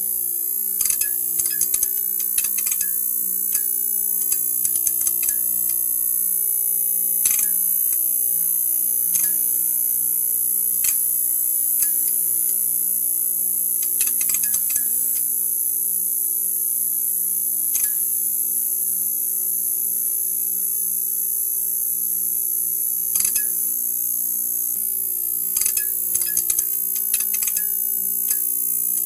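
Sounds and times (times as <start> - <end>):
sharp electrical clicks: 0.6 - 6.0, 7.2 - 8.2, 10.7 - 12.7, 13.6 - 15.4, 23.2 - 23.6, 25.4 - 29.0
crackling clicks: 0.8 - 5.8, 25.6 - 29.0.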